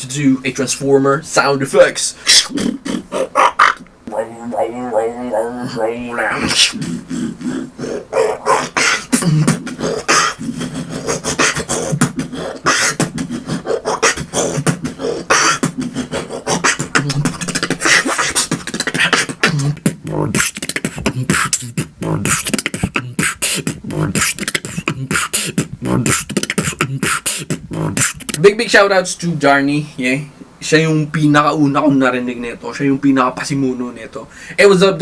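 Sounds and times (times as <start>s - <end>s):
beatboxing clicks and rasps: 2.3s - 28.4s.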